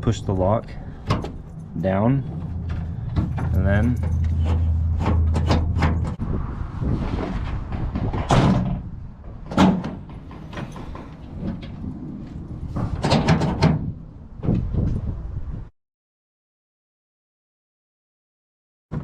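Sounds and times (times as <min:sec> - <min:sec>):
tailgate knocks and clunks: 0:01.0 - 0:01.7, 0:02.3 - 0:06.2, 0:07.7 - 0:11.8, 0:12.7 - 0:14.7.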